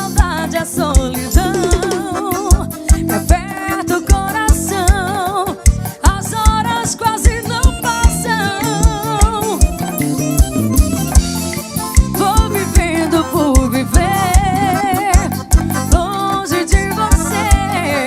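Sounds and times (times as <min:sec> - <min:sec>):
live band playing: 0:00.0 - 0:18.0
melody with wide vibrato: 0:01.2 - 0:06.0, 0:06.6 - 0:18.0.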